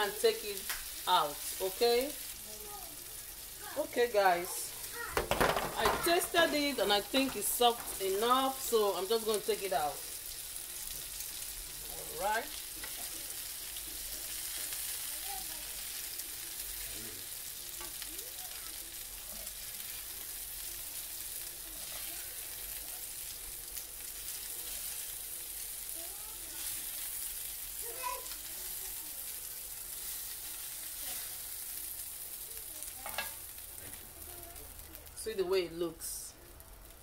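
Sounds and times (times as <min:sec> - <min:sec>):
meat sizzling in oil: 0:00.0 - 0:37.0.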